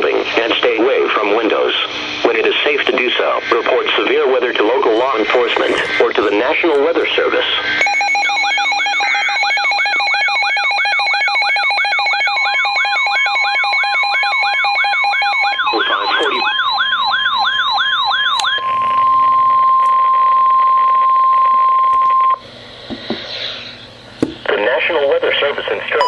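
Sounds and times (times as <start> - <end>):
steady high alarm tone: 7.7 - 22.4
fast steady beeps: 7.8 - 18.7
swooping siren tones: 7.8 - 22.4.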